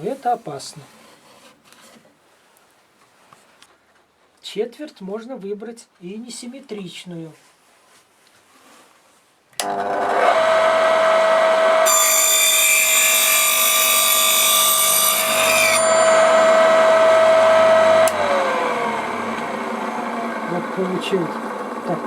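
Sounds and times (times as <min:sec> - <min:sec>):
circular saw motor whining: 0:09.6 - 0:22.0
saw cutting wood: 0:09.6 - 0:22.0.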